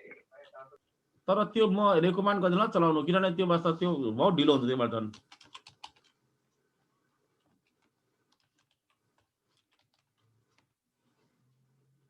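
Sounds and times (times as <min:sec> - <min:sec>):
typing on computer keyboard: 0:05.1 - 0:06.2, 0:07.5 - 0:10.7.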